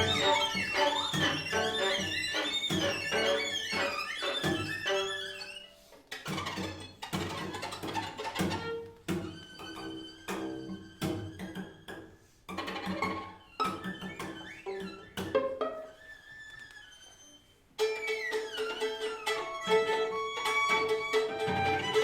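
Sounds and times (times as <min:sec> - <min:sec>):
string quartet sharp chords: 0:00.0 - 0:04.0.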